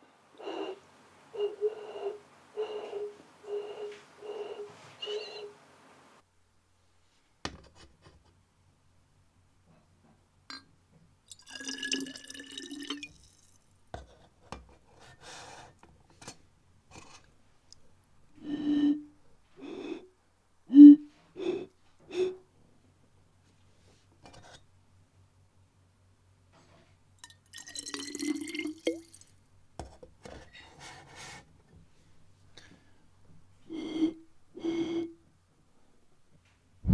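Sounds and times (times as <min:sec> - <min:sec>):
water bottles sounding notes: 0:00.0 - 0:06.2, 0:27.6 - 0:29.3, 0:33.7 - 0:35.2.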